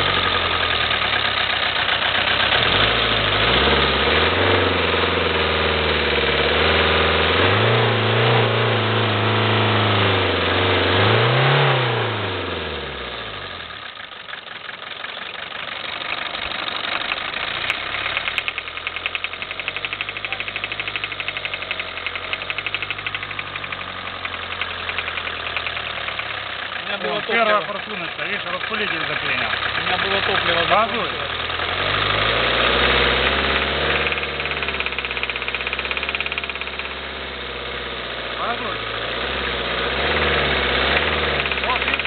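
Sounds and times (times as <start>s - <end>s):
engine knocking idle: 0.0s - 3.5s, 13.6s - 32.2s, 33.2s - 39.0s, 40.9s - 42.0s
diesel engine revving: 0.0s - 42.0s.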